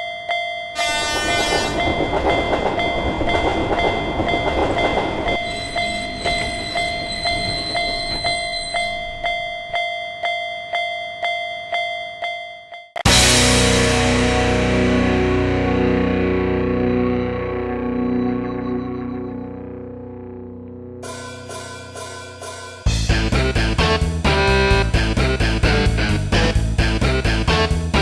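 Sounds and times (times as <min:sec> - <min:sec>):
railroad crossing bell ringing: 0:00.0 - 0:13.0, 0:21.0 - 0:23.3
freight train rumbling: 0:00.8 - 0:09.8
distorted electric guitar rock music: 0:13.0 - 0:21.8, 0:22.8 - 0:28.0.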